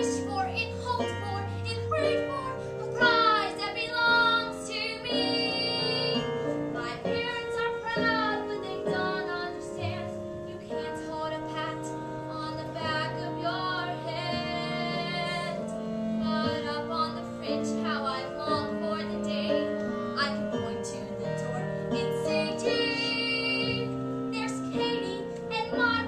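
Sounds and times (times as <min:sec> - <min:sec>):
instrumental accompaniment: 0:00.0 - 0:26.0
children singing: 0:02.9 - 0:10.0.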